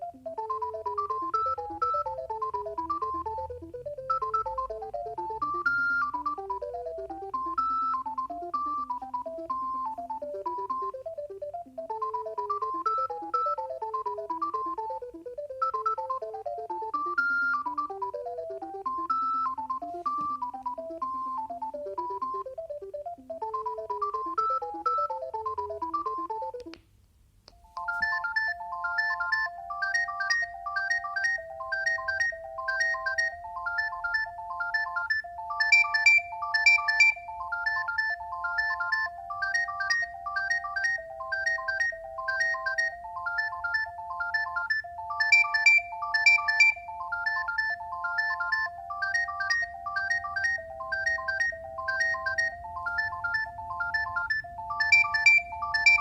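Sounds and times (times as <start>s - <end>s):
mobile phone ringtone: 0.0s - 26.8s, 27.5s - 56.0s.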